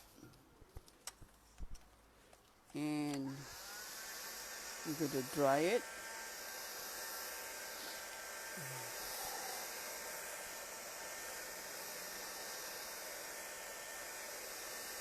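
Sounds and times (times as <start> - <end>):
hot-air blower whooshing hiss: 3.2 - 15.0.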